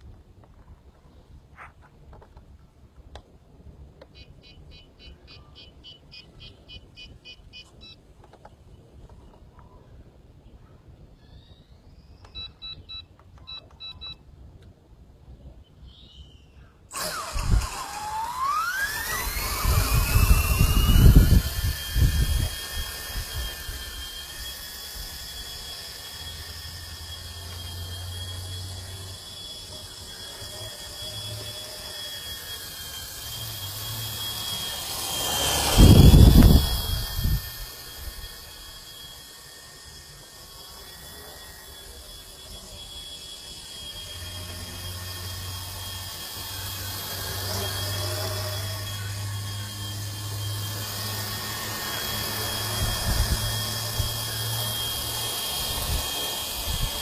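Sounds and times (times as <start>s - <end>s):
high-pitched motor whine: 16.8s - 57.0s
rotor noise: 16.9s - 57.0s.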